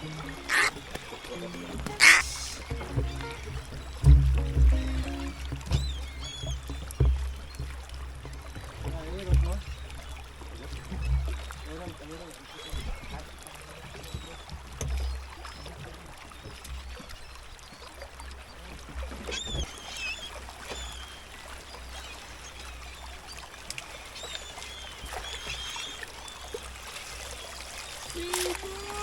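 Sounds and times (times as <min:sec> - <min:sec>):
water sloshing around boat: 0:00.0 - 0:29.0
short high calls: 0:00.3 - 0:00.8, 0:01.8 - 0:03.5.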